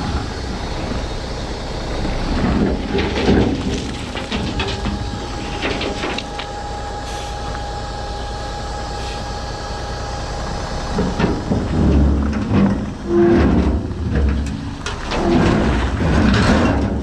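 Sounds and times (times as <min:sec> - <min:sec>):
truck engine whining: 0:00.0 - 0:17.0
rock sliding and clattering: 0:02.3 - 0:07.8, 0:11.0 - 0:17.0.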